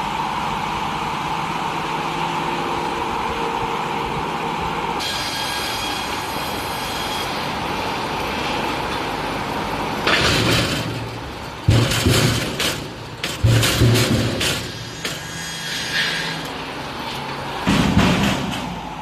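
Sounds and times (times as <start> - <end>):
log saw machine humming: 0.0 - 19.0
heavy wooden knocks and clattering: 10.1 - 14.7, 17.6 - 18.9.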